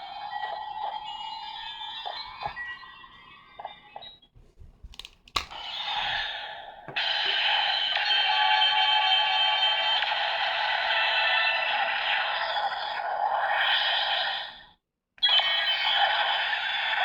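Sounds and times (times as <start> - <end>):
plastic mechanism clicks: 4.9 - 5.6.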